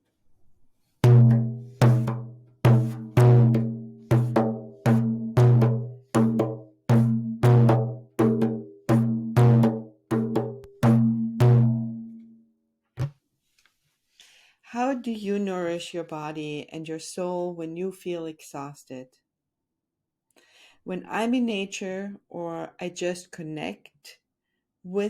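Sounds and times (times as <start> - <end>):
low-pitched hand drum beat: 1.0 - 12.0.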